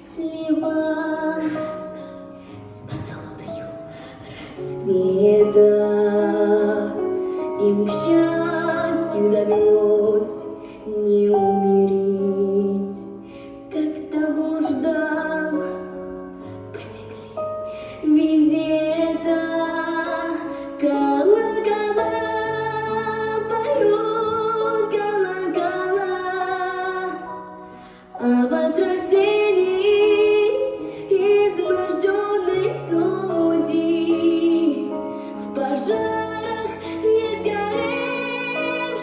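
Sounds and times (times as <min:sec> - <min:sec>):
woman singing with vibrato: 0:04.3 - 0:07.0, 0:07.6 - 0:13.1, 0:18.1 - 0:27.4, 0:28.2 - 0:39.0.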